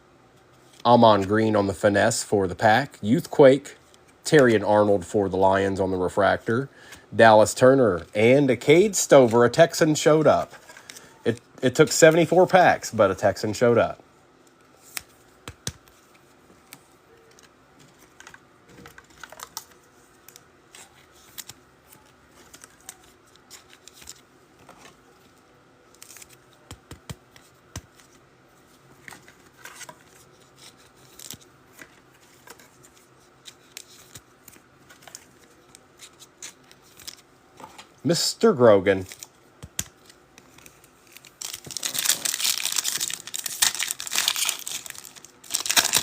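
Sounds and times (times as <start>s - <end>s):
handling of card packs: 14.6s - 28.2s, 28.9s - 38.0s, 38.8s - 46.0s.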